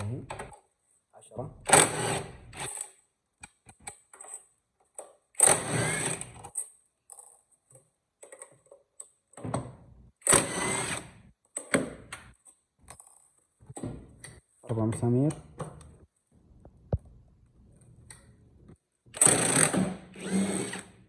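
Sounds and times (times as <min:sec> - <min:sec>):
small clicks of tool and bolts: 0:02.7 - 0:05.2, 0:06.4 - 0:09.6, 0:18.0 - 0:18.8
cordless power tool running: 0:05.6 - 0:06.2, 0:19.2 - 0:20.9.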